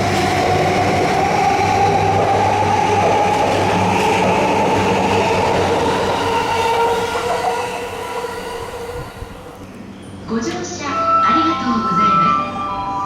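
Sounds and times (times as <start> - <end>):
train wheels clattering on rails: 0.0 - 8.1.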